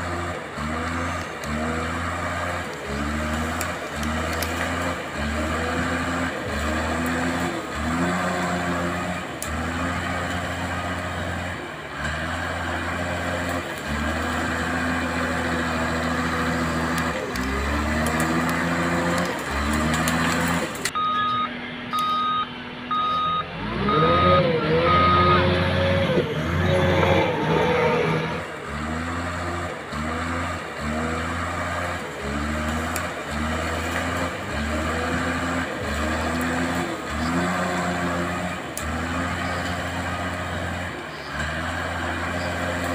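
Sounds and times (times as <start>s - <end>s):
electronic reversing beeps: 20.9s - 28.4s.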